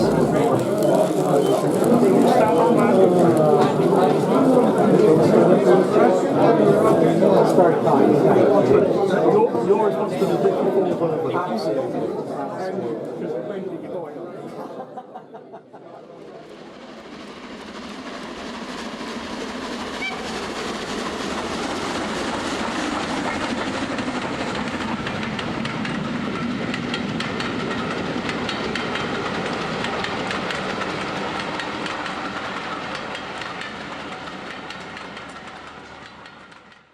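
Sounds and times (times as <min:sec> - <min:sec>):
wheels clacking over rail joints: 0:00.0 - 0:05.3, 0:17.8 - 0:36.9
train running: 0:00.0 - 0:10.7, 0:16.2 - 0:36.9.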